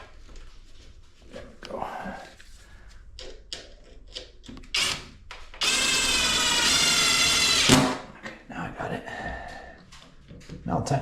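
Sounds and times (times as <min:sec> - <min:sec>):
cordless drill driving a screw: 0:04.7 - 0:05.0, 0:05.6 - 0:08.0.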